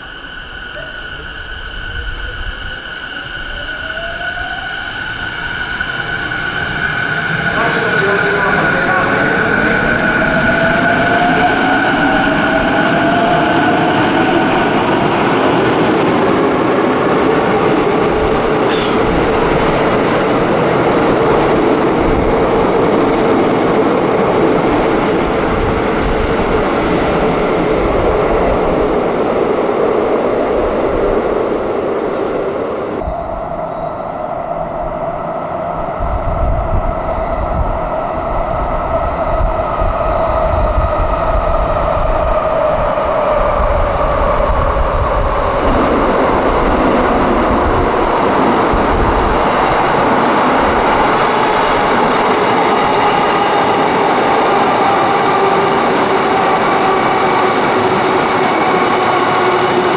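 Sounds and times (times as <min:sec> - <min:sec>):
train wheel noise: 0:42.8 - 0:59.9.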